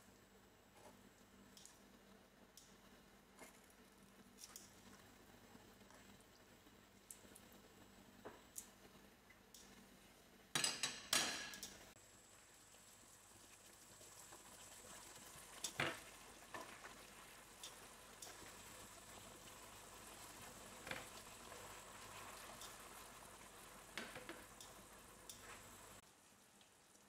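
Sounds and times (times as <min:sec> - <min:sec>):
food sizzling in frying pan: 0:12.0 - 0:27.0.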